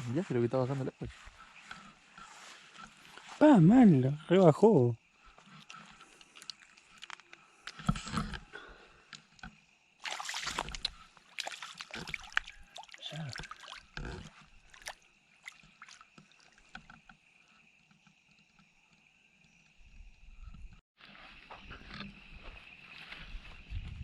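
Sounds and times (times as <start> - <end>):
water sloshing and splashing: 5.2 - 8.5, 9.4 - 17.5.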